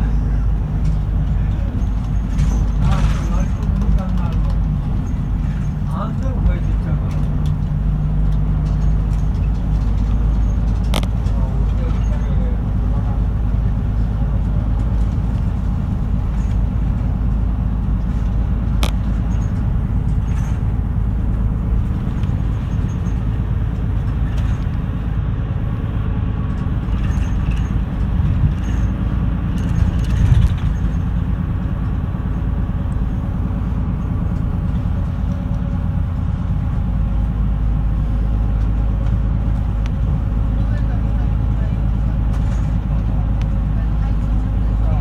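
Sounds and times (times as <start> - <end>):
bumps and rattles: 0.0 - 45.0
bus engine and road rumble: 0.0 - 45.0.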